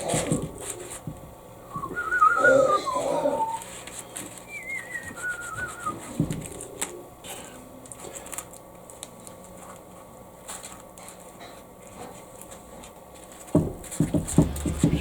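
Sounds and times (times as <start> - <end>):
dull thud: 13.6 - 15.0
high wavering whine: 14.2 - 15.0.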